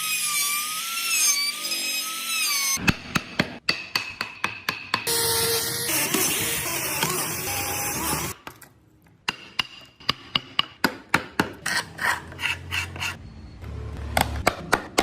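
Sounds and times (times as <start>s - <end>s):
mallet striking chisel into wood: 2.8s - 5.1s, 9.2s - 11.6s.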